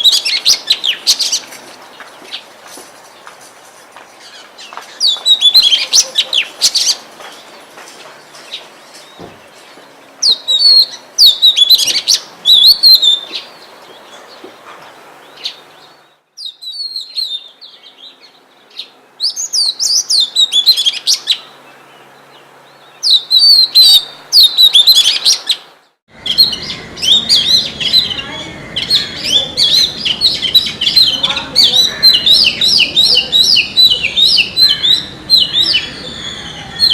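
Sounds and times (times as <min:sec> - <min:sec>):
steady background hiss: 0:00.0 - 0:36.9
bird whistling song: 0:05.0 - 0:07.0, 0:10.2 - 0:13.6, 0:15.4 - 0:18.2, 0:19.2 - 0:21.5, 0:22.9 - 0:25.6, 0:26.2 - 0:36.9.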